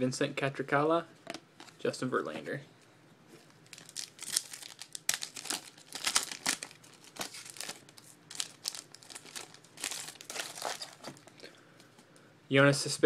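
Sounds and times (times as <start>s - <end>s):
foil wrapper crinkling: 3.6s - 11.4s.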